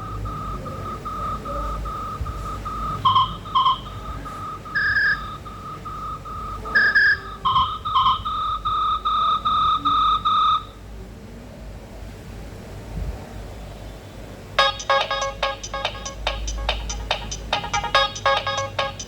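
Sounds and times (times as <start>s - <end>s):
phone ringtone electronic beeps: 0.0s - 10.8s, 14.6s - 19.0s.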